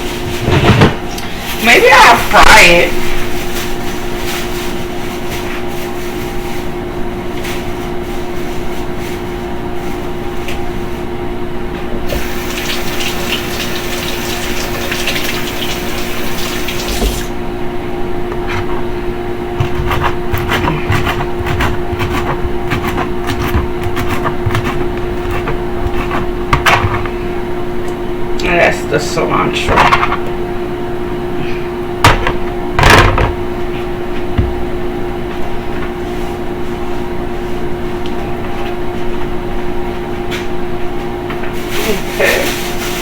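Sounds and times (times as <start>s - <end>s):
steady hum: 0.0s - 43.0s
tap running into sink: 12.1s - 17.3s.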